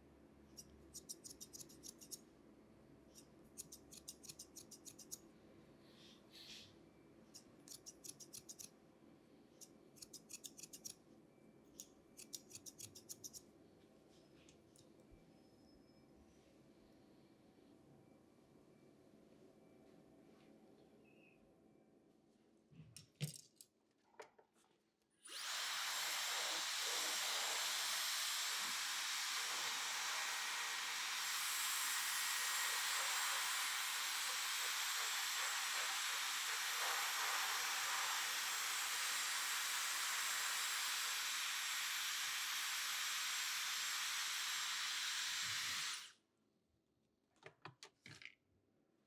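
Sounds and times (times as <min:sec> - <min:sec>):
hair dryer blowing: 0:25.3 - 0:46.1.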